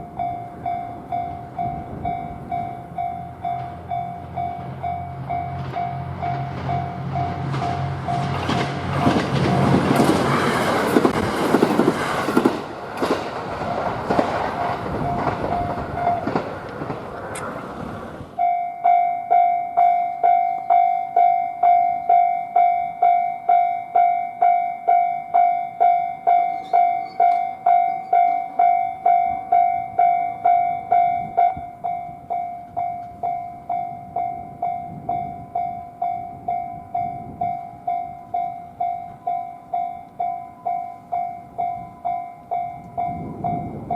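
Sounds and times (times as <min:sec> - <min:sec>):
crossing alarm bell ringing: 0:00.0 - 0:11.1, 0:13.6 - 0:16.4, 0:18.4 - 0:43.9
train wheels clattering: 0:03.4 - 0:17.7.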